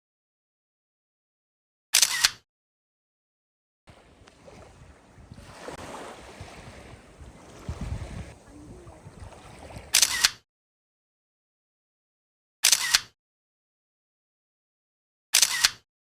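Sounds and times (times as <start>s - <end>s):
wind buffeting microphone: 3.9s - 9.9s
surf washing: 3.9s - 10.0s.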